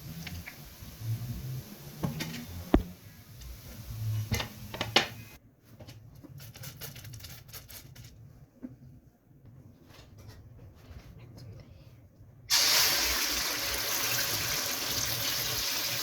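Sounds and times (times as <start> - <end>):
kitchen clicks and knocks: 4.3 - 5.2.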